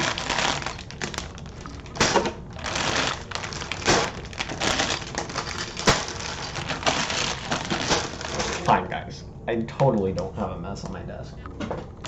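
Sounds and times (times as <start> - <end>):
paper and plastic crinkling: 0.0 - 8.8.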